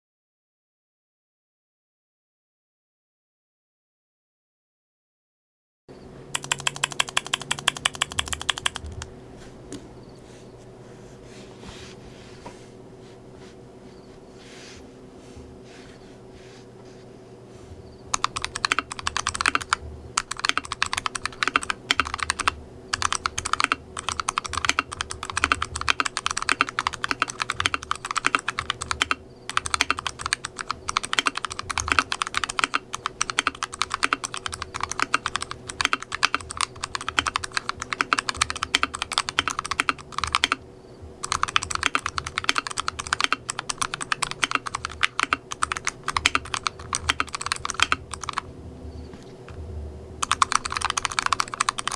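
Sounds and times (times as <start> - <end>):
fast mechanical keyboard typing: 6.3 - 9.1, 18.1 - 40.6, 41.2 - 48.5, 50.2 - 51.9.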